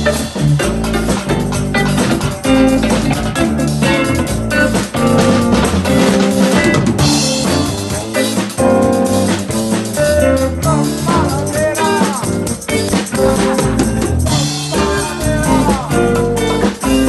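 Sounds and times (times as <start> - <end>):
band playing: 0.0 - 17.0
drum kit beat: 0.0 - 17.0
guitar bending notes: 0.0 - 17.0.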